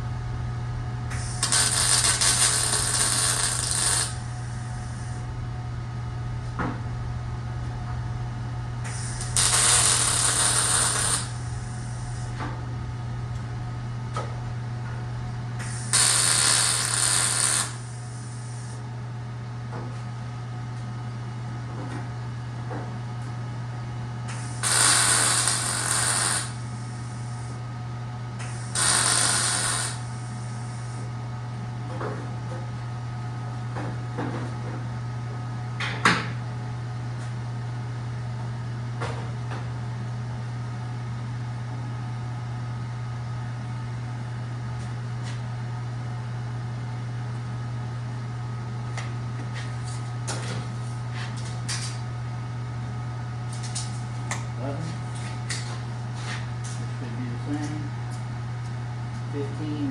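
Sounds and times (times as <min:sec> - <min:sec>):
steady low hum: 0:00.0 - 0:59.9
grinder on steel tubing: 0:01.2 - 0:04.2, 0:09.0 - 0:11.4, 0:15.8 - 0:17.9, 0:24.6 - 0:26.6, 0:28.7 - 0:30.0.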